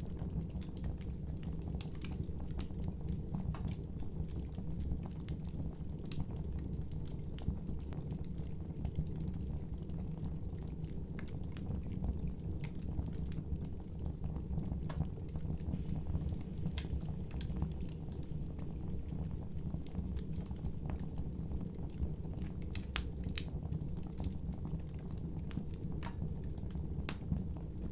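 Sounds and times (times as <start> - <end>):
fire crackles and pops: 0.0 - 27.9
low rush of flames: 7.4 - 27.9.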